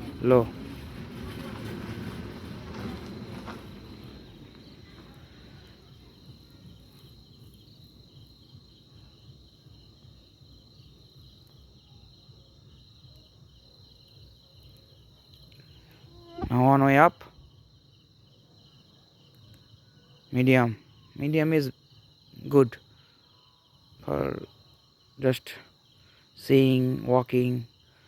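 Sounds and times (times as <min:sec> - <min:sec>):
low rustling noise: 0:00.0 - 0:08.4
crickets chirping: 0:00.0 - 0:28.0.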